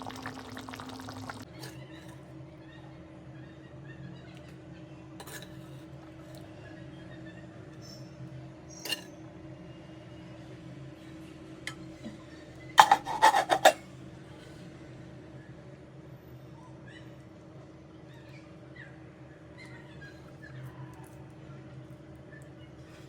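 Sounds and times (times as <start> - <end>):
utensils clinking on cookware: 12.8 - 13.8.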